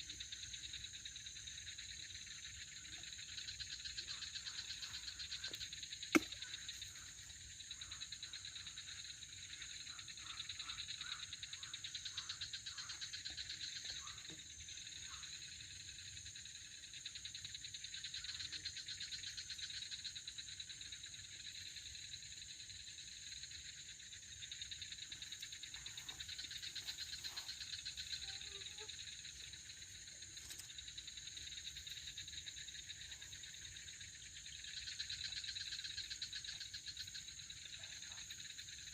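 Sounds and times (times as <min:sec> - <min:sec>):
night insects trilling: 0:00.0 - 0:38.9
sharp click: 0:06.2 - 0:06.4.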